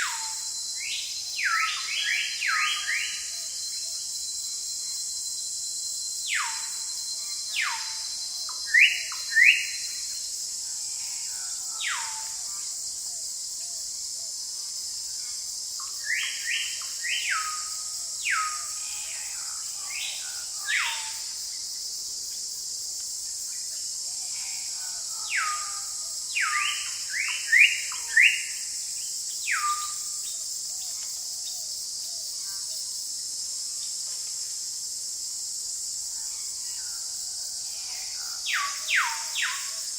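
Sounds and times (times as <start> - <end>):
forest birds whistling: 0.0 - 4.0, 6.2 - 10.1, 15.8 - 19.0, 26.4 - 28.6, 29.4 - 30.4, 38.4 - 39.8
insects hissing: 0.0 - 39.9.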